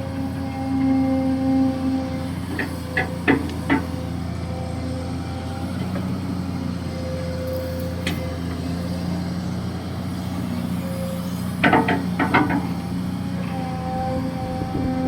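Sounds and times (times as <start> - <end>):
excavator diesel engine running: 0.0 - 15.0
sharp metallic knocks: 11.6 - 12.7.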